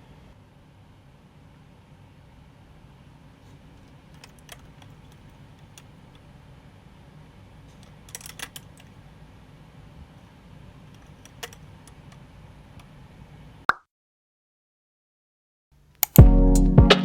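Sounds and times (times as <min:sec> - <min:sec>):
short sharp click: 0:16.0 - 0:16.3.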